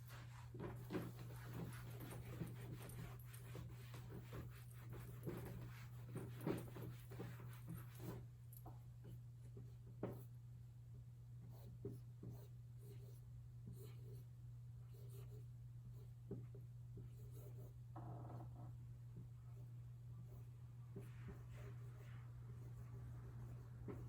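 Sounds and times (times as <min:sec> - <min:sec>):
pen writing strokes: 0:00.1 - 0:08.2.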